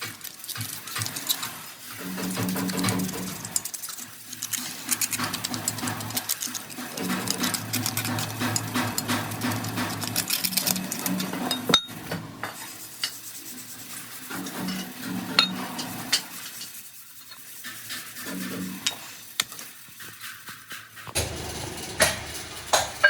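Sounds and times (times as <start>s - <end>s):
scraping and rustling: 0.0s - 23.0s
low hum: 21.2s - 23.0s.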